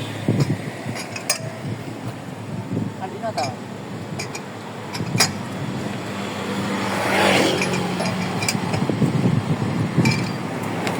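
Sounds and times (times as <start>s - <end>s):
motor vehicle passing: 4.7s - 10.9s.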